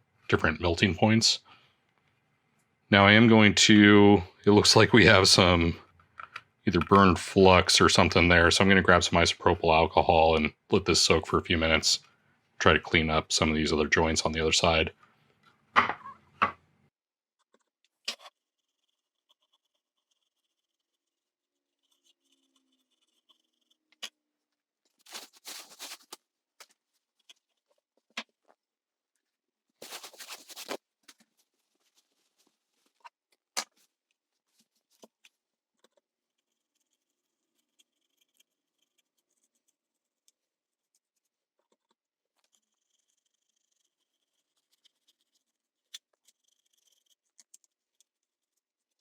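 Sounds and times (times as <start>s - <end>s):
brush scrubbing circuit board: 25.0s - 26.2s, 35.8s - 49.0s.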